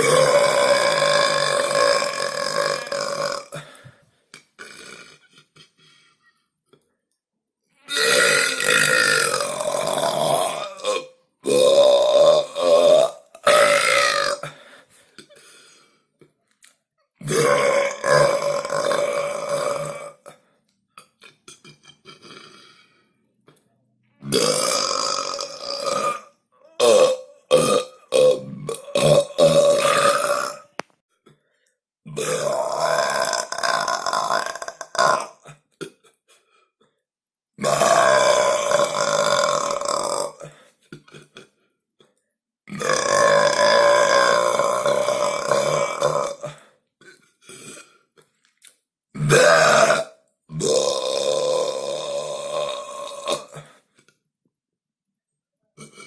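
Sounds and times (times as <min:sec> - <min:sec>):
long loud burps: 0:00.0 - 0:05.9, 0:07.9 - 0:15.4, 0:17.2 - 0:23.0, 0:24.2 - 0:30.8, 0:32.1 - 0:36.2, 0:37.6 - 0:41.6, 0:42.7 - 0:48.2, 0:49.1 - 0:53.9.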